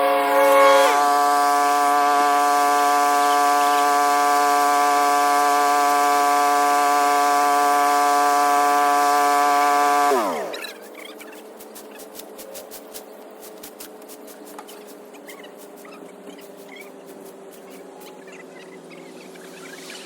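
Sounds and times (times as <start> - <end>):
engine winding down: 0.0 - 11.4
small gas engine running: 0.0 - 20.0.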